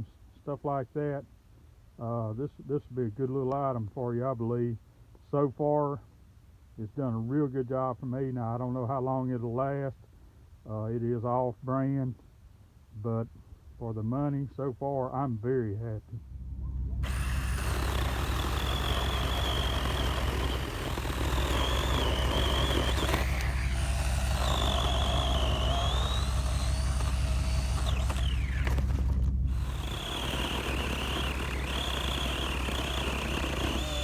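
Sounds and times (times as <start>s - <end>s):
electric chainsaw cutting wood: 17.0s - 34.0s.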